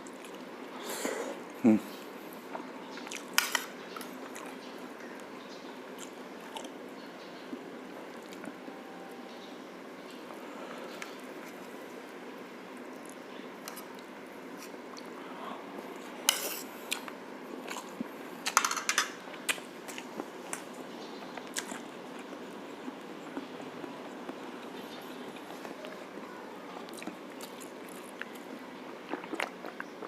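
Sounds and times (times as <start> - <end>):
steady background hiss: 0.0 - 30.0
person chewing: 6.0 - 6.8, 16.0 - 18.6, 19.4 - 26.1, 26.8 - 30.0
utensils clicking on a plate: 18.5 - 19.2.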